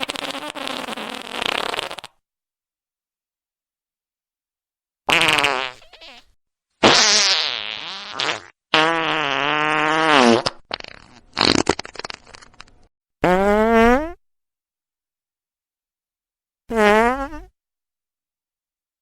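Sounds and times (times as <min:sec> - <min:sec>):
farts: 0:00.0 - 0:02.2, 0:05.1 - 0:06.2, 0:06.8 - 0:14.2, 0:16.7 - 0:17.6.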